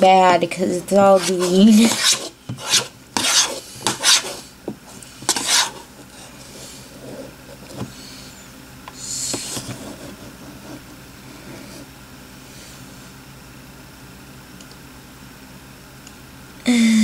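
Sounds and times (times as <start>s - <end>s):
scraping and rubbing strokes: 1.0s - 4.5s, 5.2s - 7.3s
slime being mixed: 1.0s - 4.5s, 5.2s - 7.7s.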